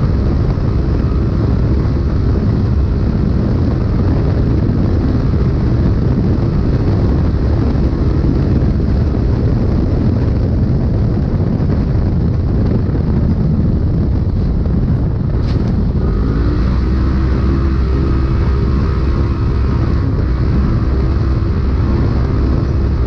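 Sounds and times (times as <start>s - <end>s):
vehicle engine and road noise: 0.0s - 23.0s.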